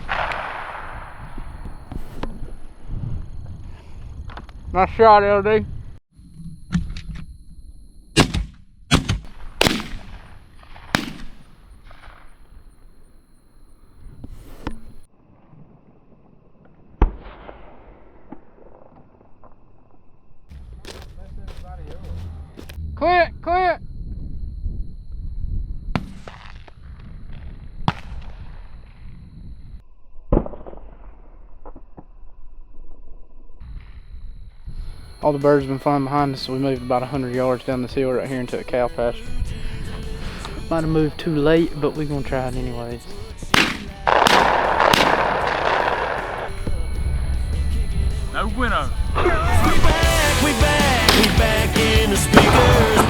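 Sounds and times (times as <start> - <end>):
shotgun blasts with echo: 0.0 - 2.4, 8.2 - 12.4, 43.5 - 46.5, 51.1 - 51.4.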